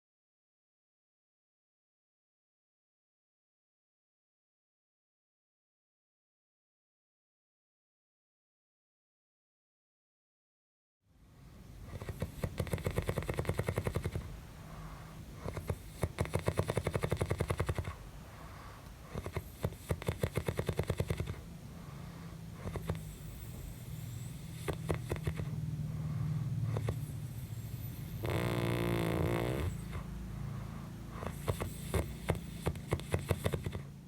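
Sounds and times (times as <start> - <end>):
person snoring with rattle: 11.8 - 34.0.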